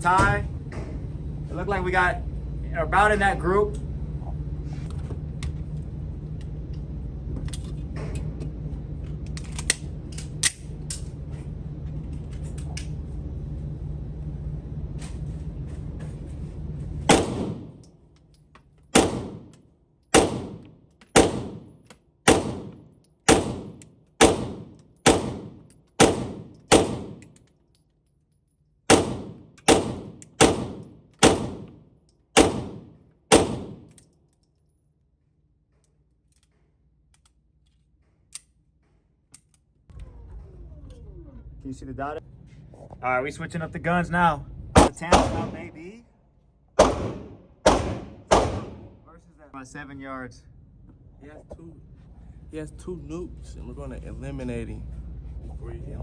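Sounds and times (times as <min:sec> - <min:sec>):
low hum: 0:00.0 - 0:56.0
pistol shots: 0:17.1 - 0:17.8, 0:18.9 - 0:19.5, 0:20.1 - 0:27.3, 0:28.9 - 0:31.8, 0:32.4 - 0:34.0, 0:44.8 - 0:45.8, 0:46.8 - 0:49.0.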